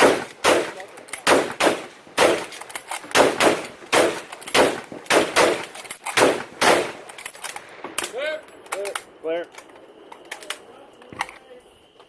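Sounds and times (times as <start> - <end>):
rifle shots with echo: 0.0 - 8.0.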